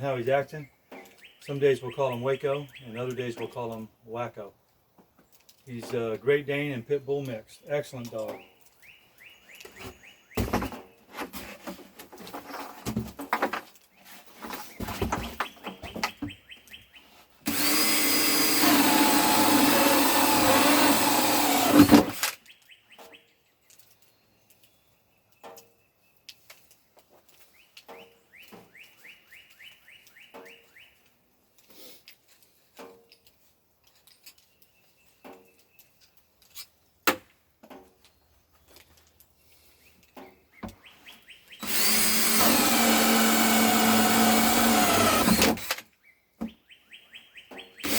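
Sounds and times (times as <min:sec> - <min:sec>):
birds chirping: 0:00.0 - 0:11.2, 0:13.8 - 0:31.7, 0:33.2 - 0:37.1, 0:37.7 - 0:47.9
small clicks and knocks: 0:04.7 - 0:06.0, 0:22.2 - 0:39.3
cordless drill drilling: 0:17.4 - 0:22.4, 0:41.6 - 0:45.8.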